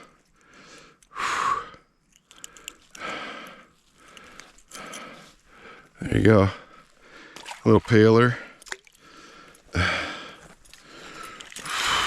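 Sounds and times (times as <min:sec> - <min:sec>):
person breathing: 0:00.0 - 0:07.6, 0:08.4 - 0:12.0
small clicks: 0:02.0 - 0:03.1.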